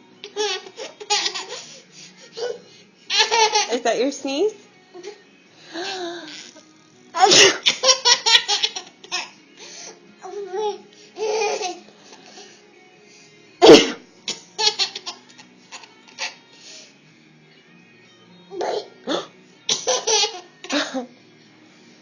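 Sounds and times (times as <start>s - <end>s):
child sneezing: 7.2s - 7.7s, 13.6s - 14.0s.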